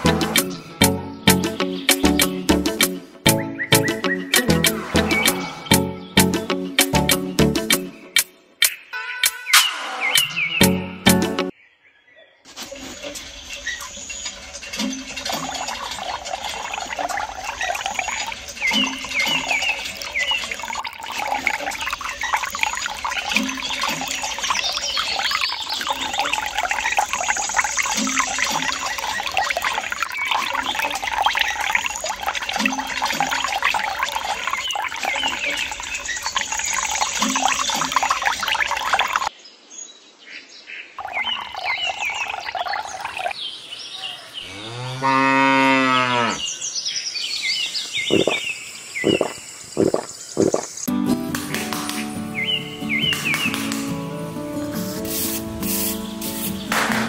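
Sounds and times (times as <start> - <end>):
cow mooing: 44.4 - 46.4.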